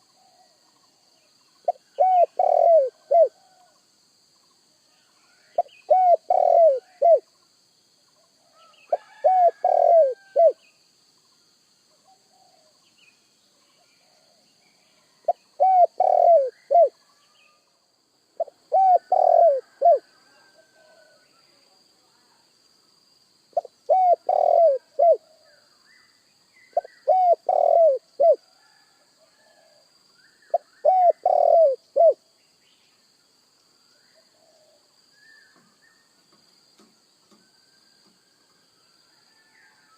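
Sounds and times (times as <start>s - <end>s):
dove cooing: 1.7s - 3.7s, 5.4s - 7.3s, 8.9s - 10.6s, 15.3s - 17.0s, 18.4s - 21.2s, 23.6s - 25.3s, 26.8s - 28.7s, 30.5s - 32.2s.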